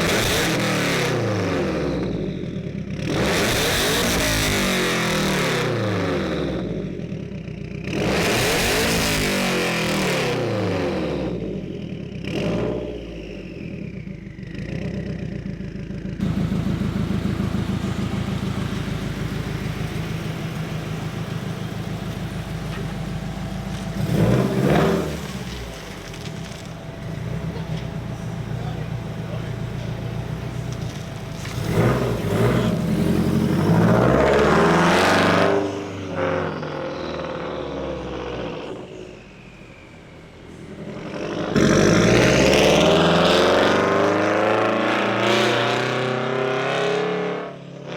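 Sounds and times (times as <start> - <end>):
car engine revving and idling: 0.0 - 47.9.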